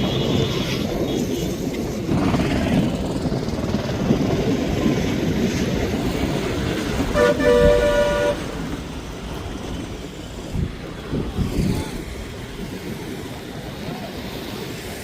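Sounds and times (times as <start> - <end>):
vehicle horn honking: 7.1 - 8.5.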